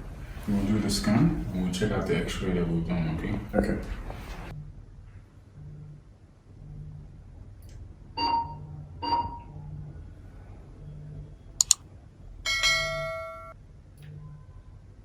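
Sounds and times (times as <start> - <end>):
sharp double click: 11.6 - 11.8
ringing chime: 12.5 - 13.6
short dings: 12.5 - 13.6.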